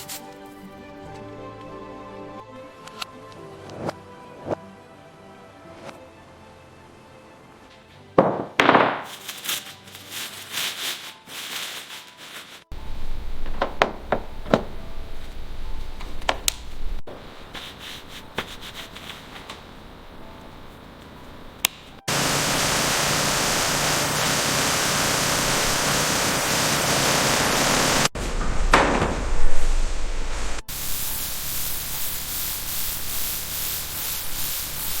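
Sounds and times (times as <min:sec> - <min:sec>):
loud spraying hiss: 0:09.1 - 0:28.4, 0:29.1 - 0:35.0
rubbing and scraping on car body: 0:17.2 - 0:19.8.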